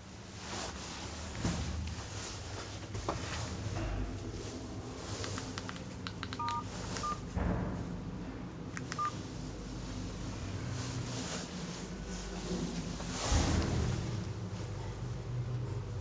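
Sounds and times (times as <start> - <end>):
electronic keypad beeps: 6.2 - 7.2, 8.9 - 9.1.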